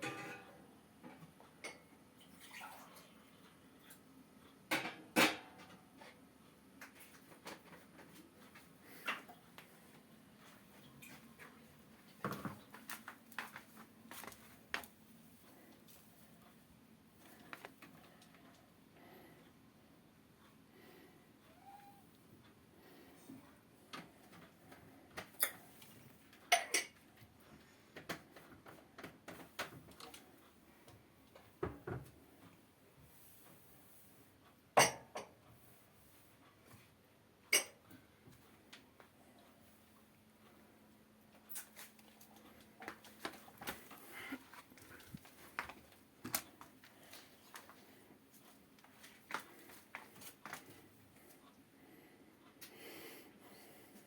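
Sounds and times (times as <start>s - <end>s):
faint clicks and taps: 17.2s - 18.7s, 41.3s - 51.6s.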